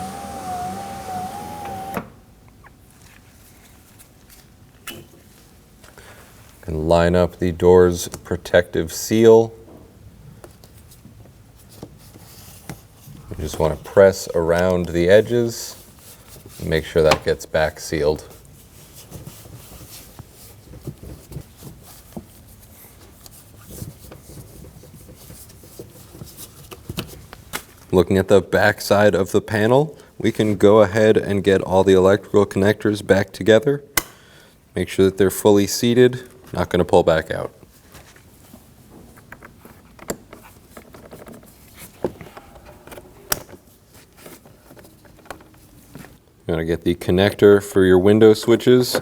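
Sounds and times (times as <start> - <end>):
hands rubbing door seal: 0.0 - 2.2
rustling of panel being handled: 37.7 - 46.2.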